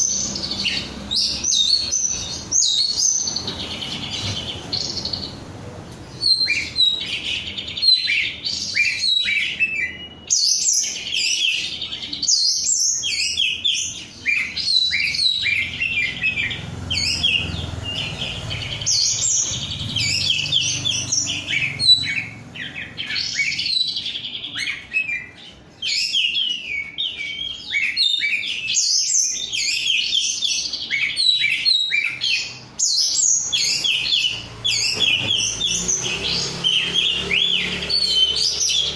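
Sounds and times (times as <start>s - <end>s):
bird singing whistled phrases: 6.2s - 38.9s.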